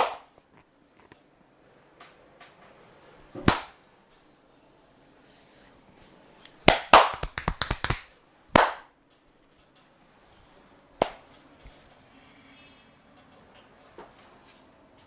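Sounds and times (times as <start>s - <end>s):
hands slapping skin in massage: 6.6s - 8.9s, 11.0s - 11.3s.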